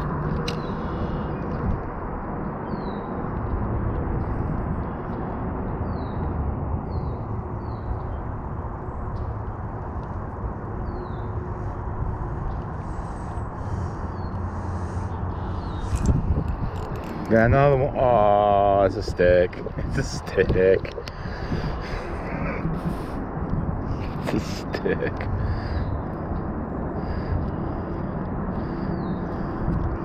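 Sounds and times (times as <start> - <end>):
outdoor rushing noise: 0.0 - 30.0
small bird chirping: 13.1 - 17.3.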